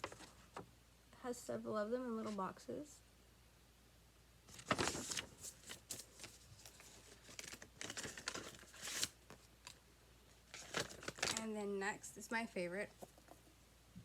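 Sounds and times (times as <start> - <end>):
packaging crinkling and tearing: 4.5 - 9.8, 10.5 - 11.4.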